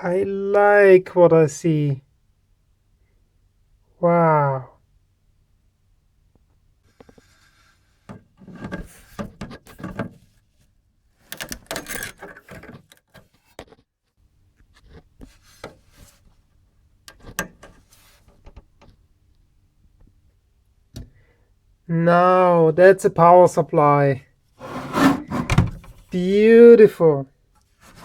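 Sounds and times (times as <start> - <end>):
scraping of electronic casing: 24.6 - 26.1.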